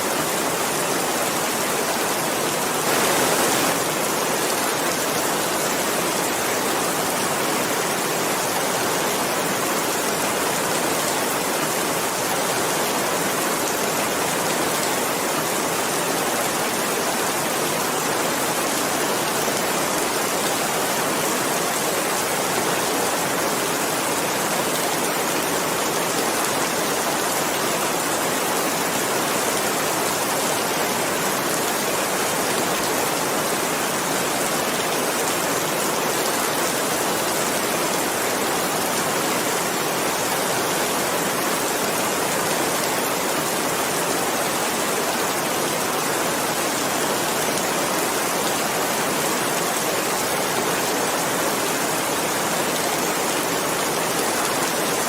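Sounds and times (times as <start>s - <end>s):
heavy rain hissing: 0.7s - 7.4s.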